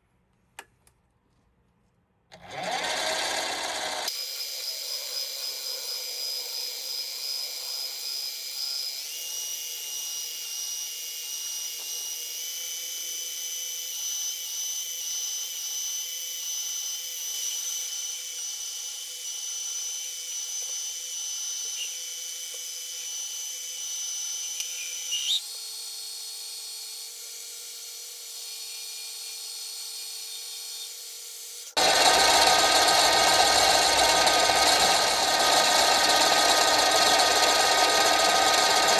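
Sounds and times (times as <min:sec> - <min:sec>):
lathe motor whining: 0:02.4 - 0:09.2, 0:31.8 - 0:38.9
loud rough machining noise: 0:02.5 - 0:09.1, 0:31.8 - 0:38.9.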